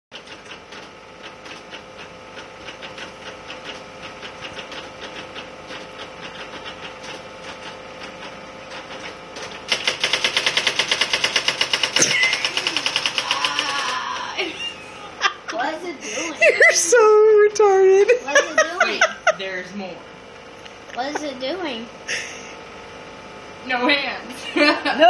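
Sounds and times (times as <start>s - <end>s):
typewriter printing clatter: 0.1s - 14.0s
electric typewriter humming: 0.1s - 19.8s.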